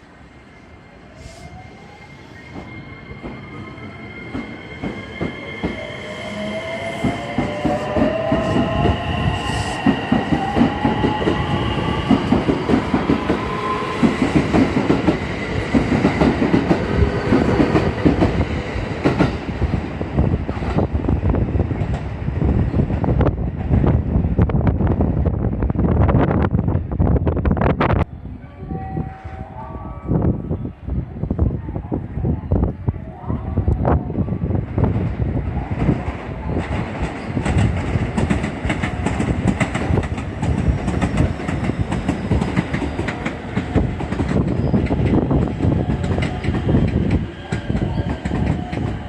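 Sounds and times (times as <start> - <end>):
train wheels clacking: 36.6 - 49.0.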